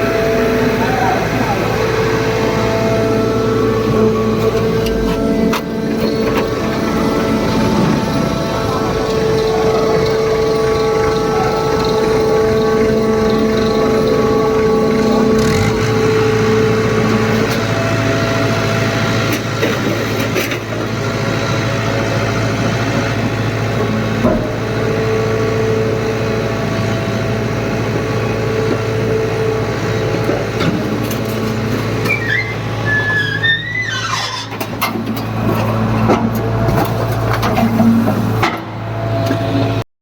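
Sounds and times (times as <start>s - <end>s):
wavering squeal: 0.0s - 18.8s, 32.0s - 34.6s
hydraulic baler humming: 0.0s - 39.8s
pump whine: 0.0s - 39.8s.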